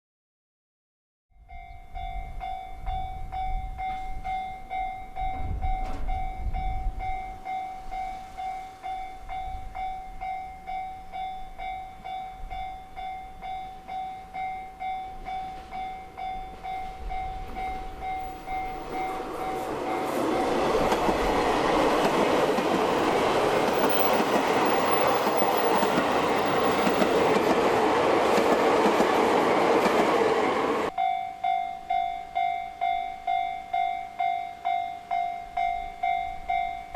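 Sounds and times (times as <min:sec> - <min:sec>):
crossing warning bell ringing: 0:01.4 - 0:36.9
train rumble and wheel clatter: 0:02.2 - 0:31.0.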